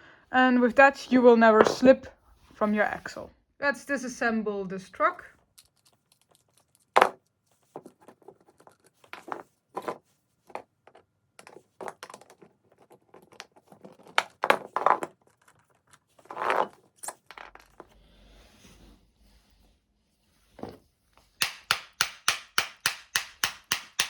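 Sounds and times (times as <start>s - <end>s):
small metal parts clicking and clattering: 5.4s - 10.0s.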